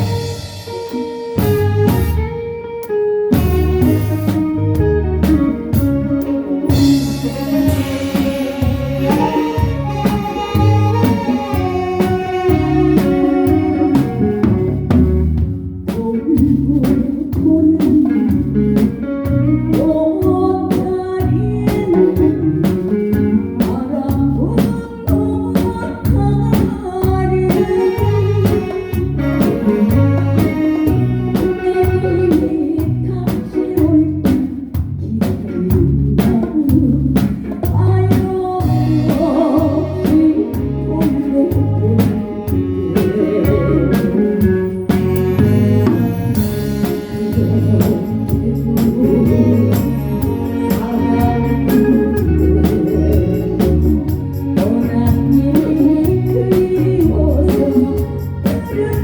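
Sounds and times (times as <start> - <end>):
band playing bass and melody: 0.0 - 59.0
drum kit beat: 0.0 - 59.0.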